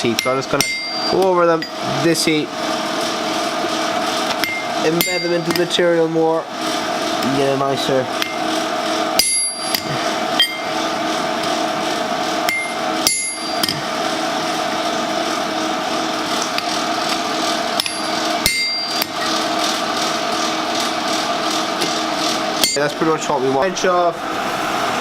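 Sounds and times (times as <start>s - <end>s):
hammer striking chisel into steel: 4.4s - 5.7s, 9.2s - 10.7s, 12.5s - 13.8s, 17.8s - 19.2s.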